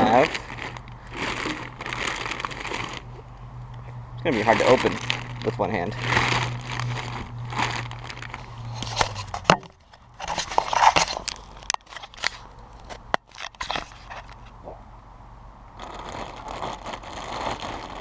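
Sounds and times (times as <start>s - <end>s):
plastic packaging crinkling: 0.0s - 3.2s, 4.2s - 14.4s, 15.8s - 18.0s
low hum: 0.0s - 10.8s
sharp clicks and scrapes: 6.0s - 14.6s.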